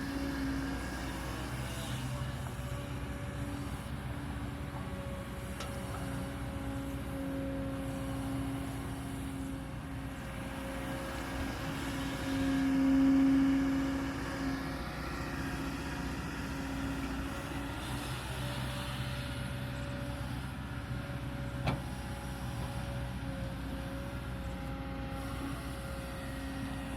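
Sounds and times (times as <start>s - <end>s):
excavator diesel engine running: 0.0s - 26.9s.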